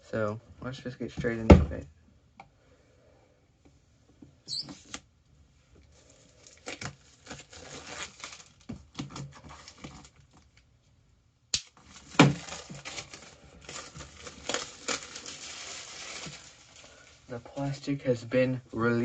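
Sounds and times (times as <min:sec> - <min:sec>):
heavy thump: 0:01.2 - 0:01.8
plastic wrap tearing and crinkling: 0:06.0 - 0:10.6, 0:11.6 - 0:17.8.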